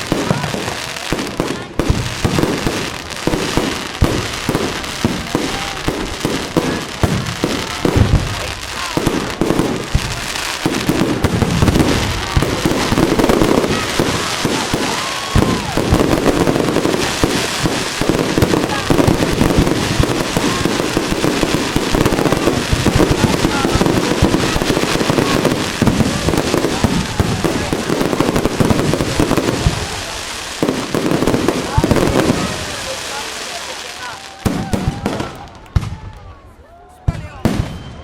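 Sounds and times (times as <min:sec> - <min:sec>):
fireworks bangs and crackling: 0:00.0 - 0:38.0.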